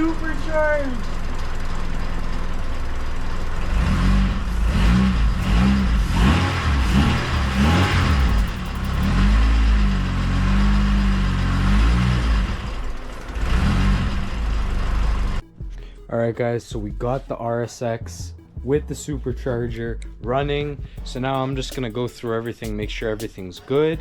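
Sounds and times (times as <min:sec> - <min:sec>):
car engine idling and revving: 0:00.0 - 0:15.8.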